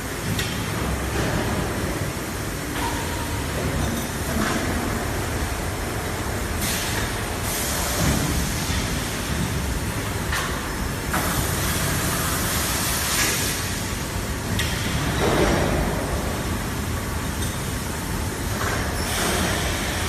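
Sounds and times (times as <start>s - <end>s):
compressed air hiss: 6.6s - 9.0s.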